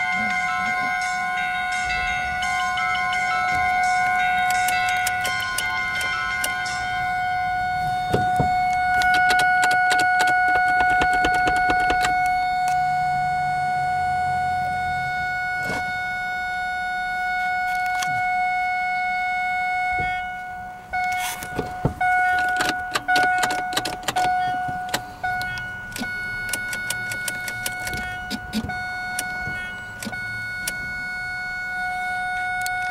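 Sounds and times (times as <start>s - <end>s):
car warning chime tone: 0.0s - 32.9s
clicks and knocks: 8.1s - 12.3s.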